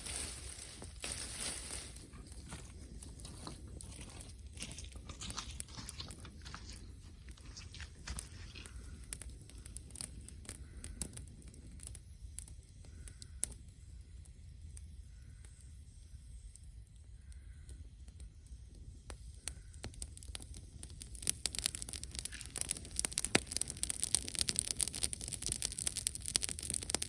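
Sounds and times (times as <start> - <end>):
faint hiss: 0.0 - 2.2
campfire crackling and popping: 0.0 - 27.0.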